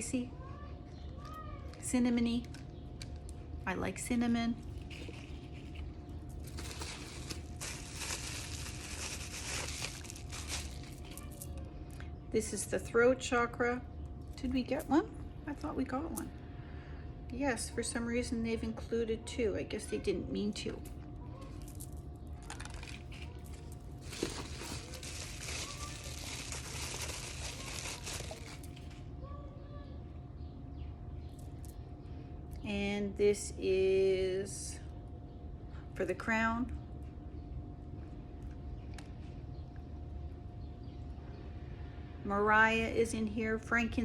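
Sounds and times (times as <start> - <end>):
packaging rustling and crinkling: 4.6 - 11.5, 21.6 - 29.0.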